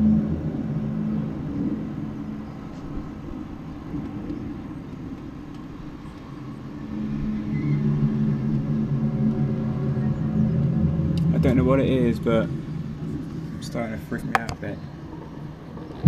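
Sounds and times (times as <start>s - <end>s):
low droning hum from the sky: 0.0s - 16.0s.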